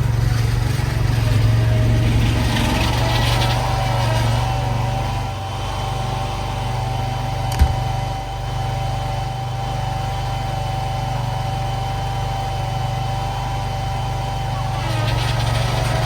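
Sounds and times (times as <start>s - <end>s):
sharp click: 7.5s - 7.9s.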